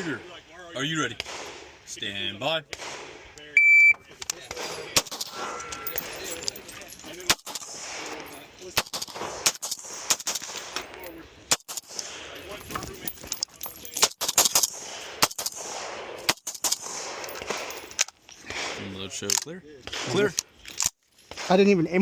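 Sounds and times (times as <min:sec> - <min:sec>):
sharp gunshots: 0:01.0 - 0:01.8, 0:02.6 - 0:03.4, 0:04.4 - 0:06.2, 0:07.2 - 0:12.4, 0:14.0 - 0:17.8, 0:18.4 - 0:19.2, 0:19.8 - 0:20.4
handling and movement noise: 0:04.0 - 0:15.6, 0:16.2 - 0:21.6.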